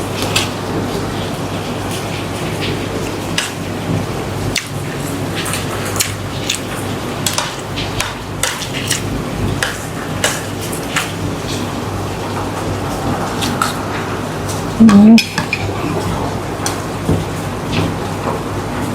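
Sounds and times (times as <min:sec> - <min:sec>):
steady low hum: 0:09.1 - 0:17.7.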